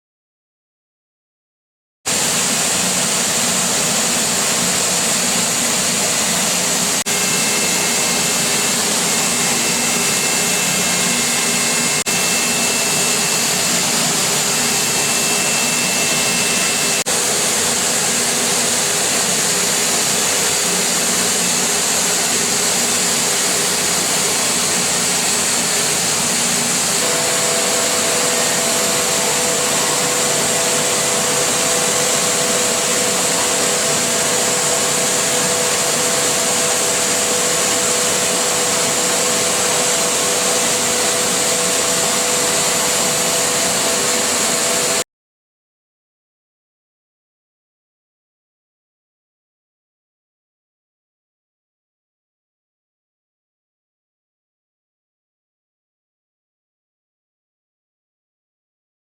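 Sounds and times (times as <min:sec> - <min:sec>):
cnc machine cutting hiss: 0:02.1 - 0:45.0.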